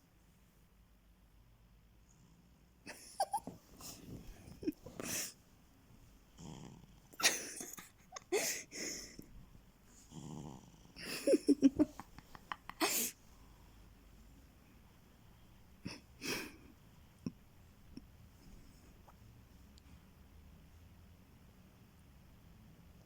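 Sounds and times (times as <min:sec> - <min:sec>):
cat snoring: 0:06.4 - 0:07.2, 0:10.0 - 0:11.2.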